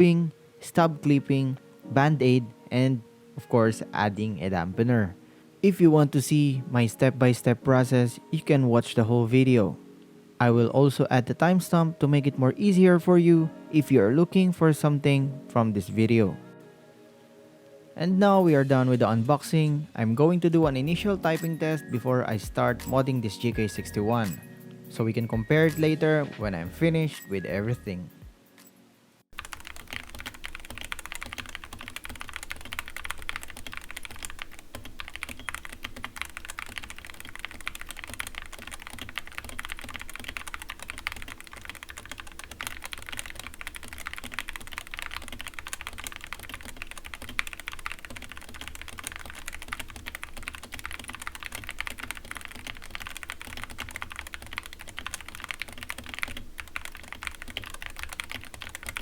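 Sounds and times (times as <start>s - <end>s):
fast typing on keyboard: 29.4s - 59.0s
rattling keyboard stabilizers: 29.4s - 59.0s.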